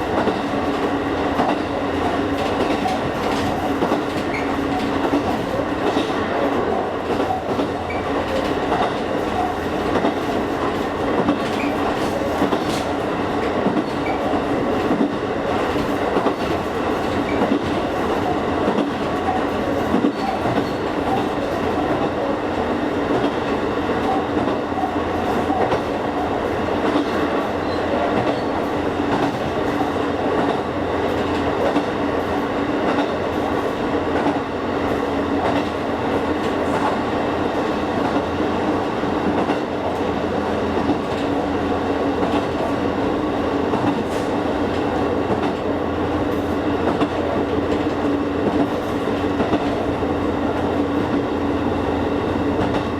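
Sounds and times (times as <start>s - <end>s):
train running rumble: 0.0s - 52.9s
wheels clacking over rail joints: 7.1s - 22.1s.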